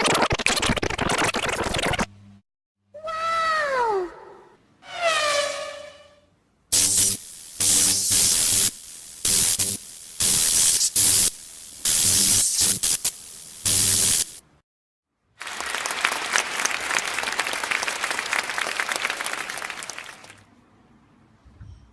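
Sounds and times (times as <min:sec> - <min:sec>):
static hiss bursts: 0:06.7 - 0:14.6
crackling static: 0:06.8 - 0:14.4.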